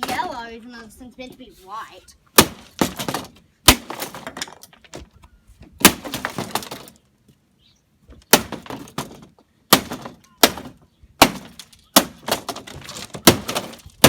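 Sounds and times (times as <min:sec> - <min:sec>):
plastic pieces crackling: 0:11.5 - 0:14.0.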